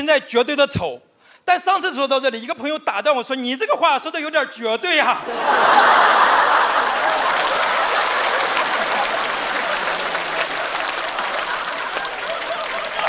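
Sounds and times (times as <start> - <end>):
audience laughter: 5.2 - 13.0
studio audience applauding: 5.3 - 13.0.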